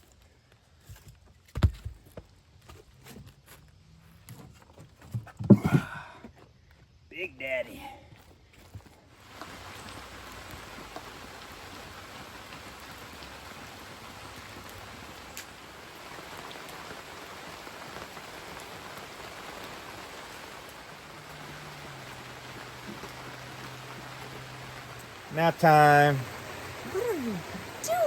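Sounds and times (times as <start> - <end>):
steady rain falling: 9.1 - 28.0.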